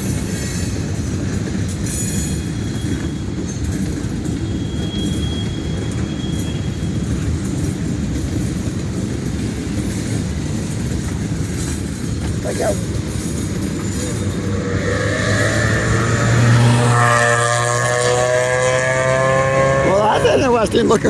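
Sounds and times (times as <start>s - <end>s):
train wheels rumbling on rail: 0.0s - 21.0s
thin wheel squeal: 4.4s - 7.3s.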